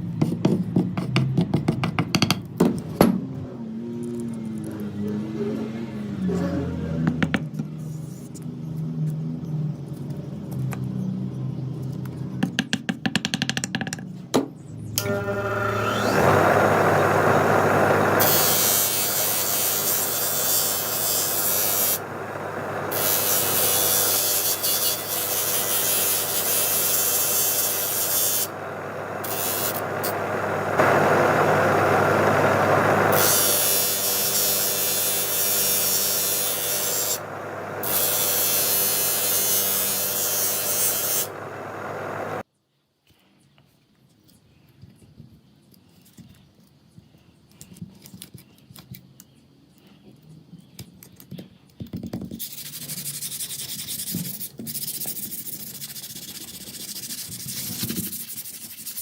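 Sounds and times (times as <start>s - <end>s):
power tool motor humming: 15.0s - 42.4s.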